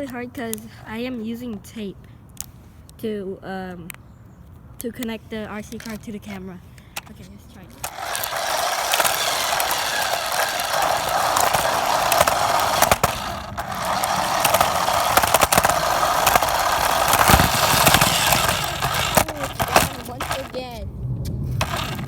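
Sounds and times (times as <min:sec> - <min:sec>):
rc car rolling and rattling: 0:05.6 - 0:06.4, 0:07.0 - 0:20.8, 0:21.5 - 0:22.0.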